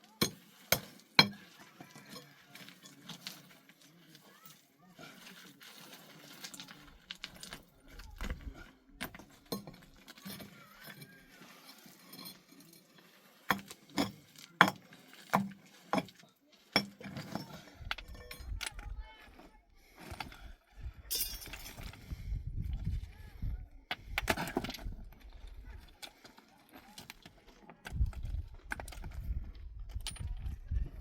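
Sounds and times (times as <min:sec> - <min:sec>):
metallic clinks and knocks: 0:16.8 - 0:18.7, 0:21.1 - 0:22.0.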